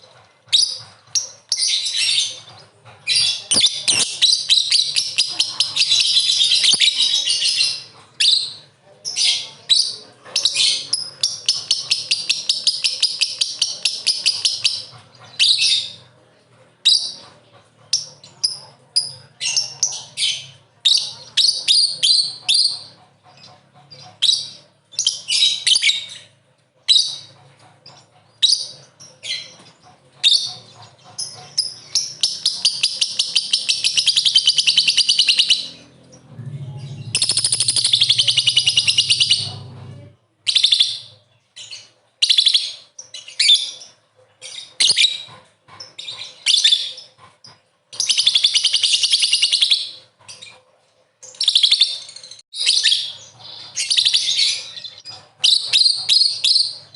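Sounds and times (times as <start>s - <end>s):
lovebird chattering: 0.0s - 16.0s, 16.8s - 36.2s, 36.8s - 39.7s, 51.3s - 56.9s.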